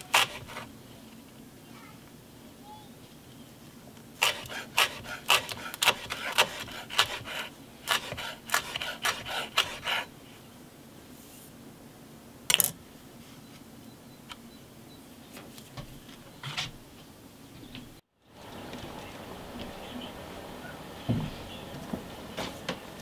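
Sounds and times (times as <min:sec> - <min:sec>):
rasping scraping strokes: 0:00.0 - 0:00.7, 0:04.2 - 0:10.1.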